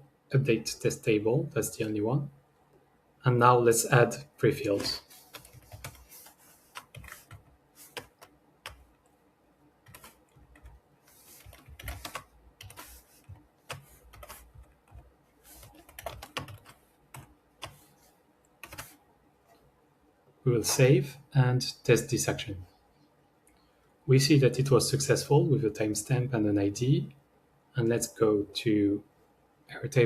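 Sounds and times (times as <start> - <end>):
computer keyboard typing: 4.8 - 8.9, 9.8 - 17.9, 18.6 - 19.0.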